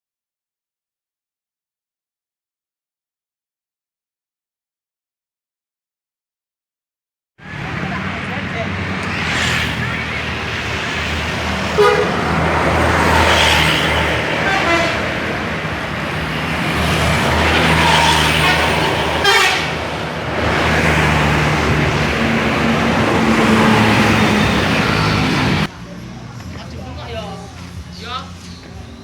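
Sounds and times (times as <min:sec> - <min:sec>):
bus engine running: 0:07.4 - 0:29.0
bus horn tooting: 0:11.3 - 0:15.9, 0:17.1 - 0:25.7.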